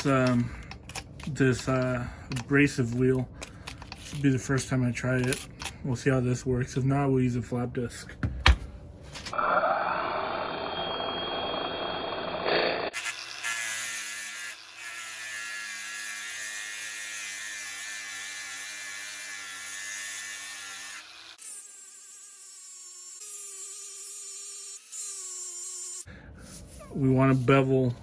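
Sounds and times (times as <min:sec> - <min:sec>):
angle grinder grinding steel: 0:09.4 - 0:26.1.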